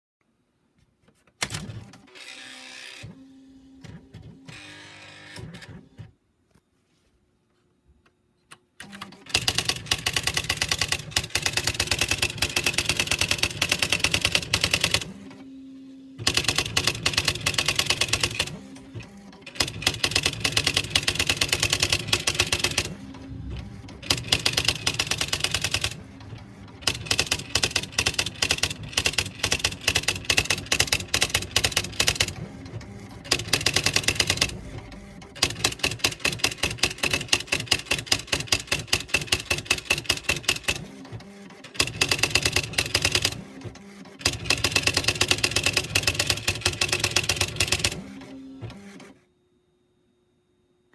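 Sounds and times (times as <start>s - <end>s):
typewriter keystrokes: 8.8s - 15.1s, 16.2s - 48.1s
typewriter motor humming: 8.8s - 15.4s, 16.2s - 49.0s.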